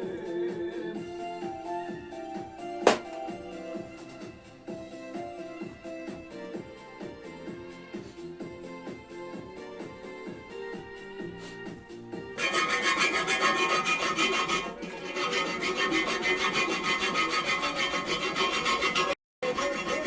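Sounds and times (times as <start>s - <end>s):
belt grinder rasping: 12.4s - 20.0s.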